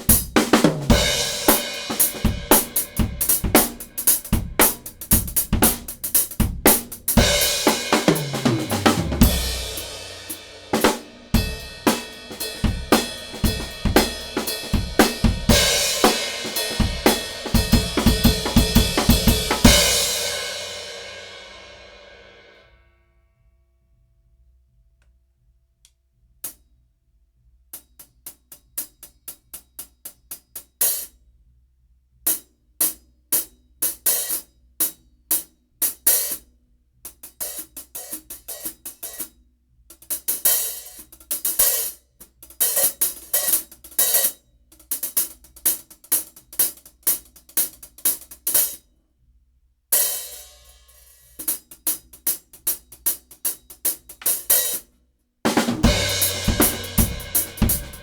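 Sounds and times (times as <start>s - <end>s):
hi-hat strokes: 0.0s - 20.0s, 55.6s - 58.0s
ringing hi-hat wash: 0.0s - 20.0s, 55.8s - 58.0s.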